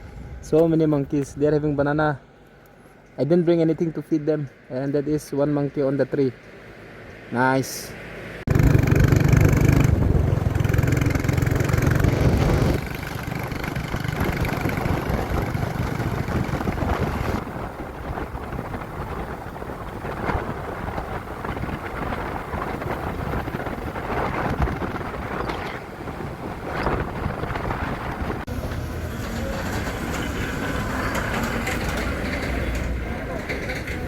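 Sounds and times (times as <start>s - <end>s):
road noise: 0.0s - 34.0s
motorcycle engine: 8.5s - 25.8s
wind buffeting microphone: 8.5s - 34.0s.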